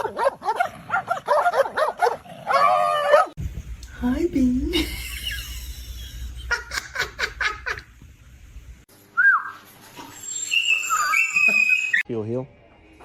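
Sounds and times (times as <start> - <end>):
person laughing: 4.7 - 7.9
high-pitched squeak: 9.9 - 12.0.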